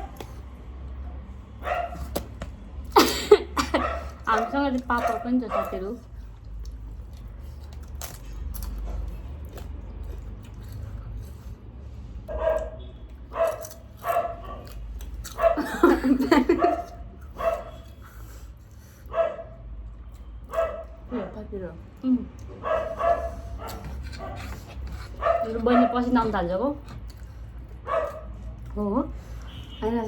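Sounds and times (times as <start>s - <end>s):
dog barking: 1.6s - 2.2s, 3.6s - 6.1s, 12.3s - 15.9s, 16.5s - 17.9s, 19.1s - 19.6s, 20.5s - 21.1s, 22.6s - 26.4s, 27.8s - 28.4s.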